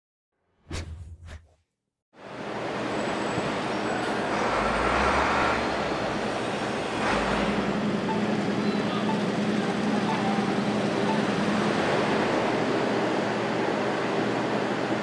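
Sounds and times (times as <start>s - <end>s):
brief swoosh: 0.6s - 1.6s
street traffic: 2.2s - 15.0s.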